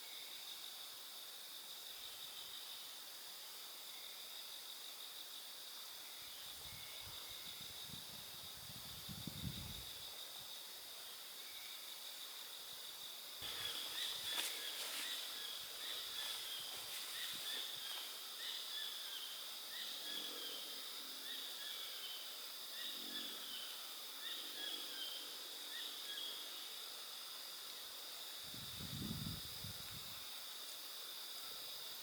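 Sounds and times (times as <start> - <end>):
cicadas droning: 0.0 - 32.0
birds chirping: 13.4 - 18.7.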